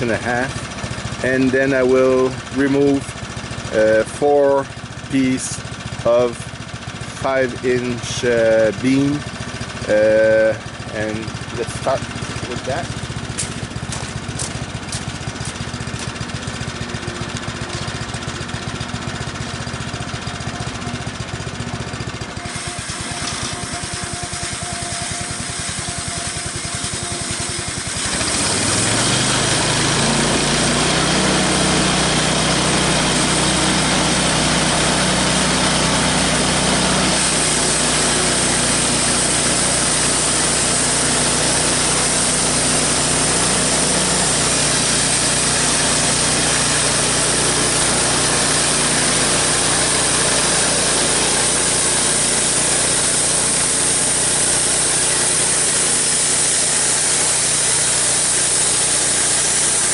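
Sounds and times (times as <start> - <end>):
sawmill engine running: 0.0 - 59.9
band blade sawing a log: 22.4 - 59.9
bright hissy sawing: 22.4 - 59.9.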